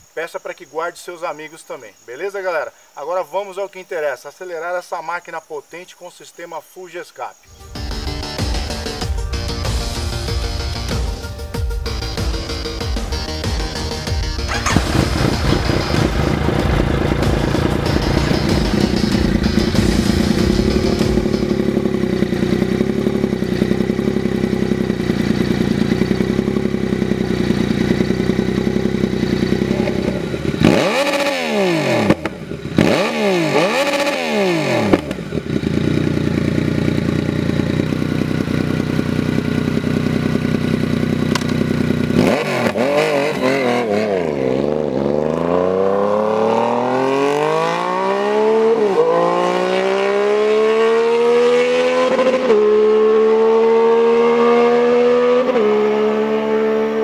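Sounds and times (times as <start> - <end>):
motorcycle engine revving: 11.8 - 57.0.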